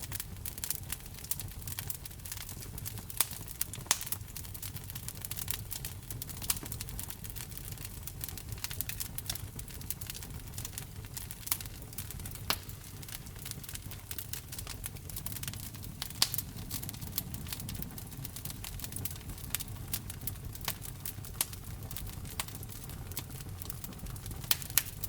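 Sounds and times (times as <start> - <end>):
sharp fire pops: 0.0 - 25.0
wood fire crackling: 0.0 - 25.0
low steady rumble: 10.5 - 22.4.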